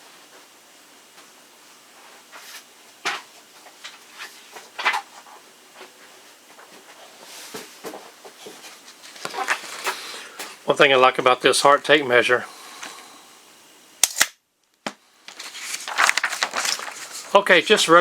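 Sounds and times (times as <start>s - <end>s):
objects being handled: 6.7s - 10.6s.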